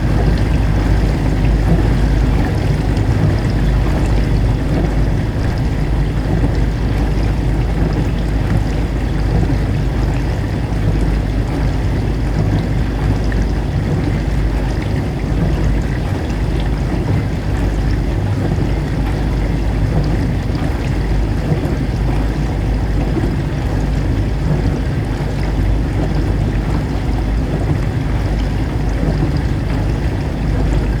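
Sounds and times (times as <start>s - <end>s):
water spraying inside dishwasher: 0.0s - 8.7s
dishwasher motor hum: 0.0s - 31.0s
sloshing and spraying water: 0.0s - 31.0s.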